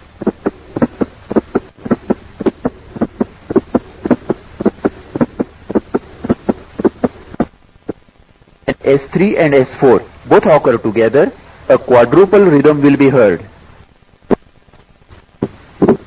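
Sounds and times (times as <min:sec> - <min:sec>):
heart sounds gallop rhythm: 0:00.2 - 0:08.0, 0:15.4 - 0:16.0.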